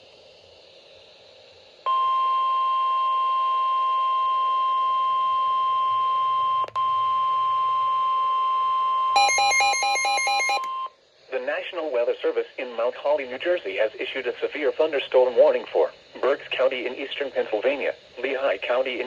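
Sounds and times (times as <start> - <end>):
faint radio hiss: 0.0 - 1.9, 10.2 - 19.0
steady alarm tone: 1.9 - 10.9.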